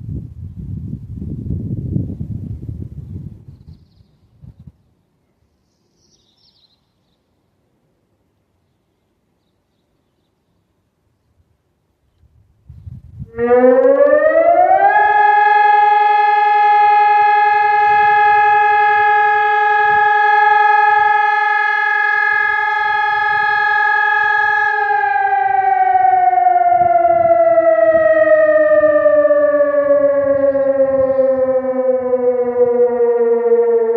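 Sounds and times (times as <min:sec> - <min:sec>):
siren rising and holding tone: 0:13.2 - 0:33.9.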